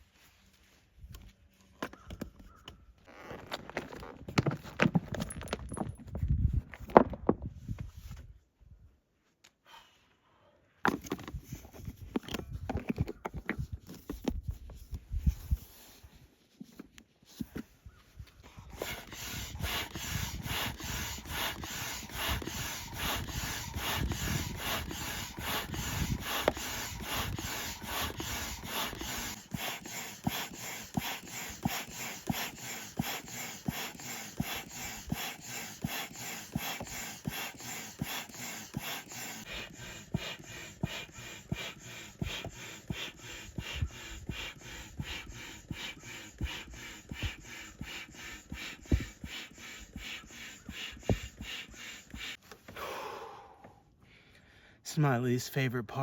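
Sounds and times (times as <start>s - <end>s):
hand pump strokes rasping: 3.1s - 6.0s, 18.4s - 52.6s.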